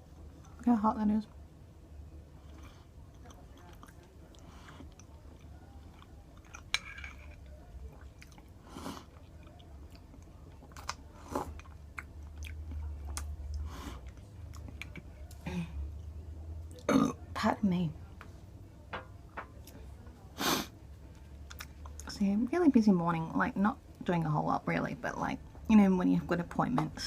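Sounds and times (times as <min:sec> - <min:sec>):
person chewing food: 0:02.4 - 0:15.4, 0:21.4 - 0:22.1.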